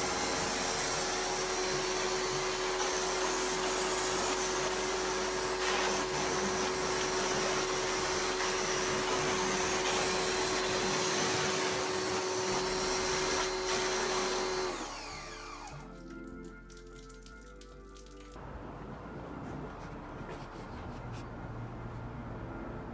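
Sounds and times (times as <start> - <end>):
pressure washer motor humming: 0.0 - 15.9, 18.4 - 22.9
water spraying hiss: 1.7 - 14.4.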